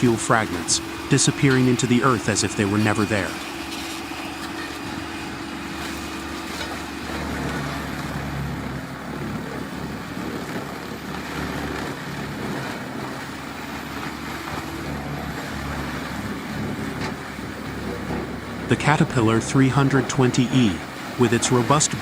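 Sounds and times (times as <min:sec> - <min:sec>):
low diesel hum: 0:00.0 - 0:22.0
stump grinder grinding: 0:00.0 - 0:22.0.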